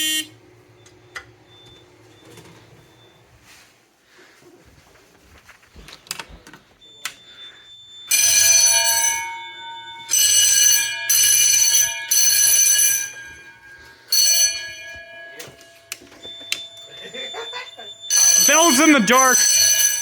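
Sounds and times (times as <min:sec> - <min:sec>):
fire alarm bells ringing: 0:06.2 - 0:20.0.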